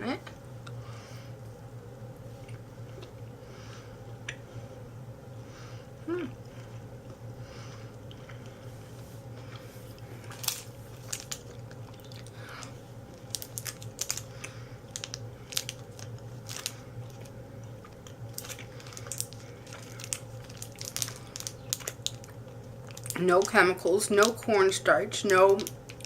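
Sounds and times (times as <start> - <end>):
low hum: 0.0 - 24.0
candy crunching: 9.4 - 26.0.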